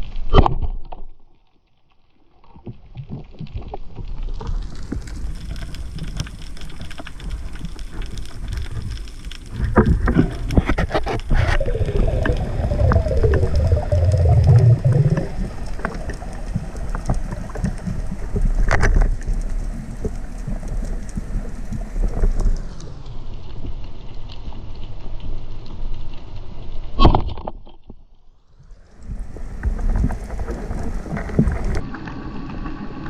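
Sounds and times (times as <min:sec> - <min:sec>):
clicks and crackles: 0:00.0 - 0:33.0
underwater water rush: 0:02.9 - 0:25.6, 0:28.6 - 0:33.0
wavering gurgling: 0:09.4 - 0:22.7.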